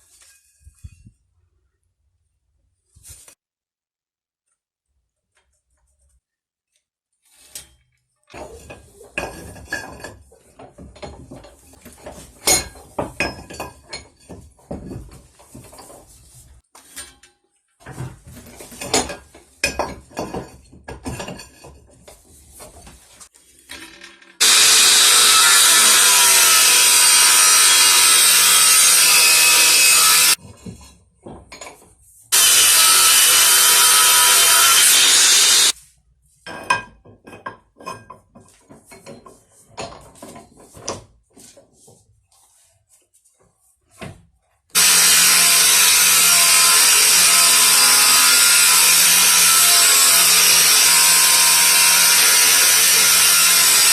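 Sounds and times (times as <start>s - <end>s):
workshop knocks and scrapes: 7.3s - 17.2s, 17.8s - 24.6s, 29.4s - 32.9s, 36.4s - 44.5s
power tool cutting steel: 24.4s - 30.4s, 32.3s - 35.8s, 44.8s - 53.9s.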